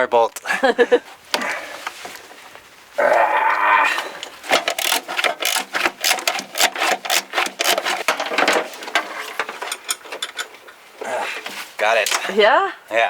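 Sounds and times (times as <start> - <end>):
ratchet wrench rasping: 4.4 - 10.4.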